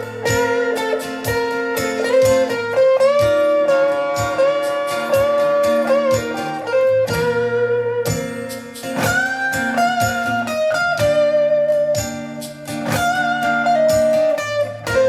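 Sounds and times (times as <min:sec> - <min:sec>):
guitar with sliding notes: 0:00.0 - 0:15.0
steady beat: 0:00.0 - 0:15.0.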